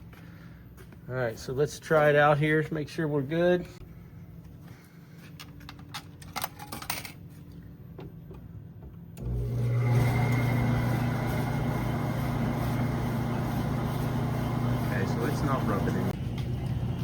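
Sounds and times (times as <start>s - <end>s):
clothes dryer humming: 9.2s - 17.0s.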